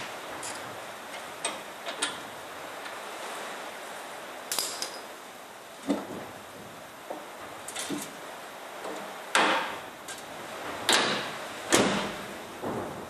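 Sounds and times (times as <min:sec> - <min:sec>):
car bonnet metallic bangs: 0:10.9 - 0:13.0.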